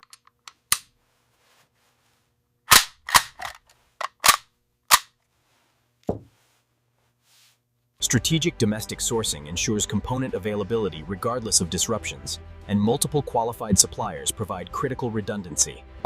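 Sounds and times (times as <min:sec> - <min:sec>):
sharp cracks: 0:02.7 - 0:05.2.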